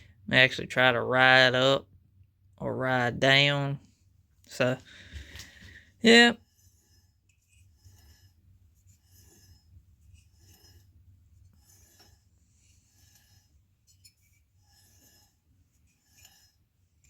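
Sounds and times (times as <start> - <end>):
faint rubbing strokes: 3.8 - 17.0.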